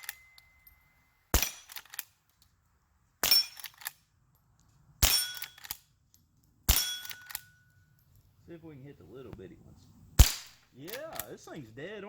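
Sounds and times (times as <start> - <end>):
quiet rifle shots: 1.3 - 2.2, 10.2 - 11.5
steel target ringing: 5.0 - 5.6, 6.7 - 7.7.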